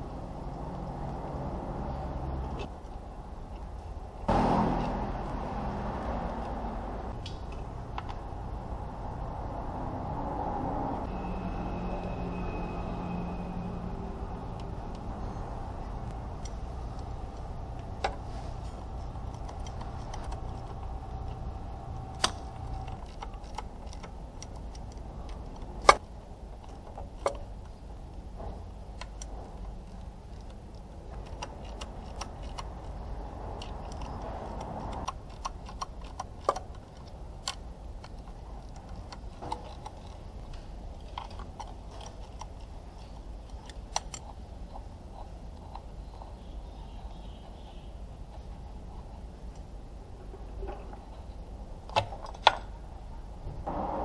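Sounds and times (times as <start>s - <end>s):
steady low hum: 0.0s - 54.0s
sharp clicks and light knocks: 16.1s - 46.4s.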